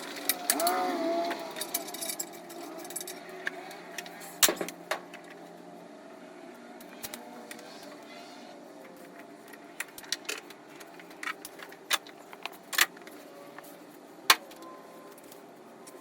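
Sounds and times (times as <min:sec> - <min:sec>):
sharp metallic clicks and clinks: 0:00.0 - 0:03.3.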